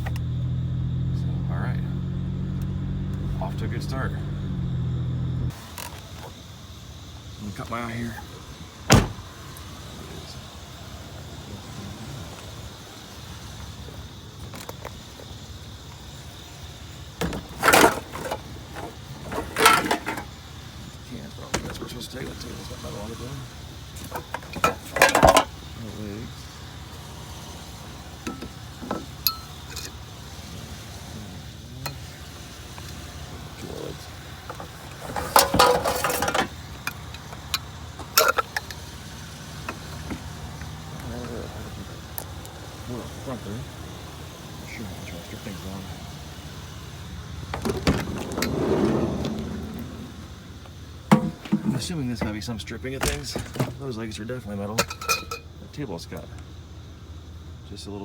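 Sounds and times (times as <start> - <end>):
steady low hum: 0.0 - 5.7
vehicle engine idling: 0.0 - 58.0
metal table legs clanking: 17.2 - 20.3, 24.2 - 25.5, 35.1 - 36.5, 51.1 - 51.9, 54.8 - 55.5.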